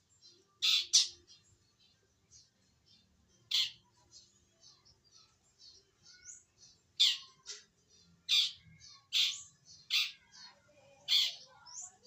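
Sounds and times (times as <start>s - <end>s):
bird harsh squawks: 0.6s - 1.2s, 3.5s - 3.9s, 7.0s - 7.4s, 8.3s - 10.2s, 11.1s - 11.5s.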